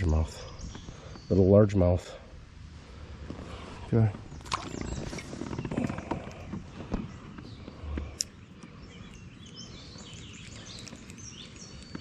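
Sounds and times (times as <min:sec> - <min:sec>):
birds chirping and singing: 0:00.0 - 0:02.3, 0:03.3 - 0:12.0
faint outdoor background noise: 0:00.0 - 0:12.0.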